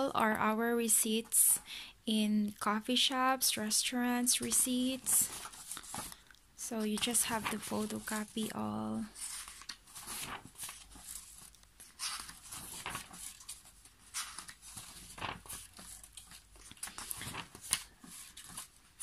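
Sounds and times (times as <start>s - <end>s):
paper rustling: 4.5s - 19.0s.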